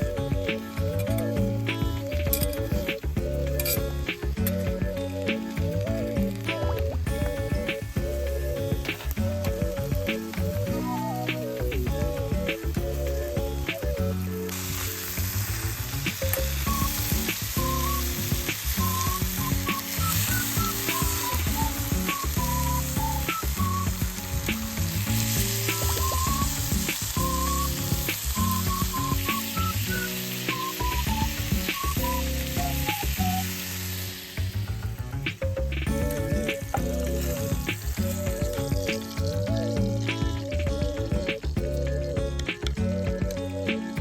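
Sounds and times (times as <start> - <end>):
background music with melody and bass: 0.0 - 44.0
meat sizzling: 0.0 - 44.0.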